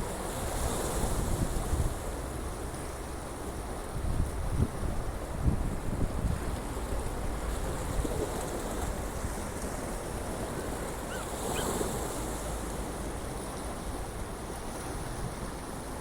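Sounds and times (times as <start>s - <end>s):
sea waves washing: 6.4s - 16.0s.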